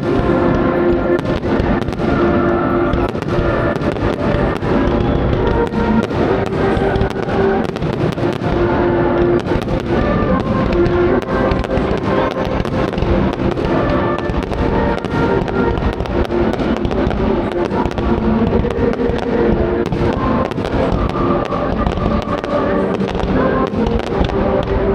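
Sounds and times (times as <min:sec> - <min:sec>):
fireworks bangs and crackles: 0:00.0 - 0:24.9
music with held notes: 0:00.0 - 0:24.9.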